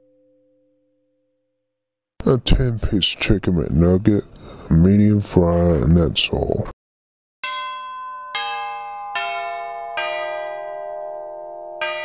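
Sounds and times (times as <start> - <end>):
bell-like chime notes: 7.4 - 12.0.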